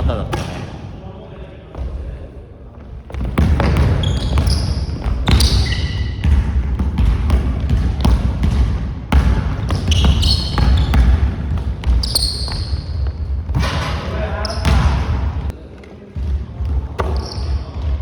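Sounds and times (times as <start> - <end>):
basketball dribbling thuds: 2.8 - 15.5
sneaker squeaks: 2.9 - 7.1, 9.6 - 15.5, 17.0 - 18.0.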